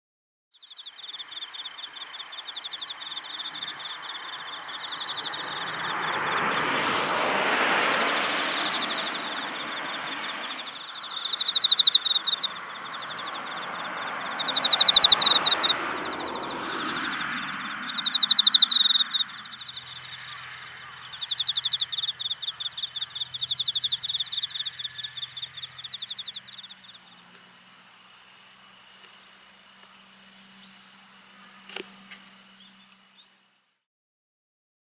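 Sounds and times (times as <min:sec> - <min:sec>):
crickets chirping: 0:00.6 - 0:33.8
broad rush of noise: 0:02.9 - 0:30.4.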